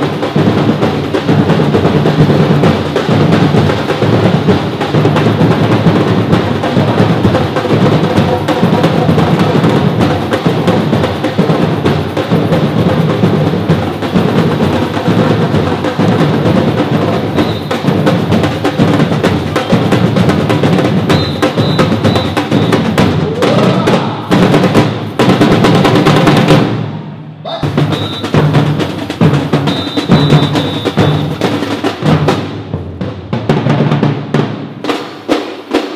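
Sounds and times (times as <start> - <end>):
rapid snare-like strokes: 0.0 - 26.9, 27.5 - 35.9
drum ensemble playing: 0.0 - 35.9.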